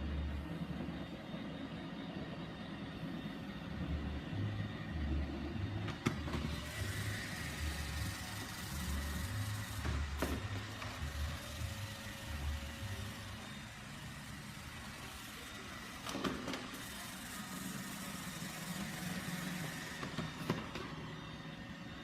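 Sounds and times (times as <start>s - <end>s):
robot vacuum motor hum with hiss: 4.4s - 22.0s.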